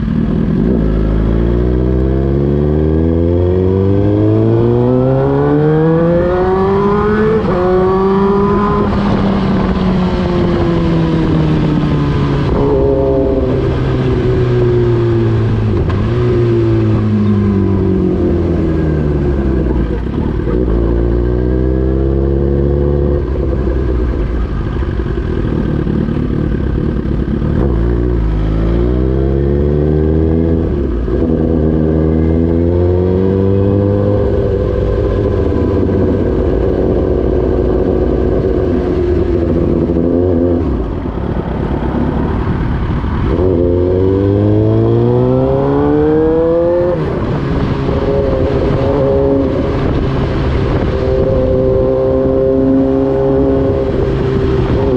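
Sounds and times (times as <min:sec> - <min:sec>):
motorcycle engine revving through gears: 0:00.0 - 0:54.9.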